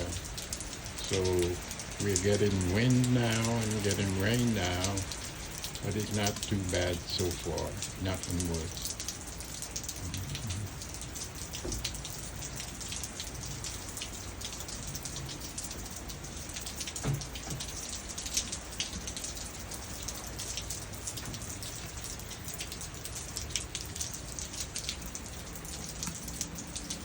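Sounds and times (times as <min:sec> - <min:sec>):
heavy rain: 0:00.0 - 0:27.0
raindrops hitting surfaces: 0:00.0 - 0:27.0.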